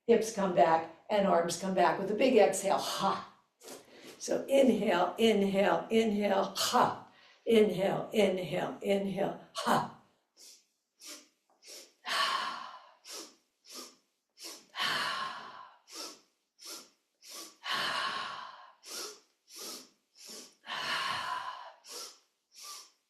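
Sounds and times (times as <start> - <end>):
forceful exhale through mouth: 10.4 - 23.0
sniffing inhales through nose: 13.0 - 14.8, 15.4 - 18.2, 18.8 - 20.8, 21.6 - 23.0.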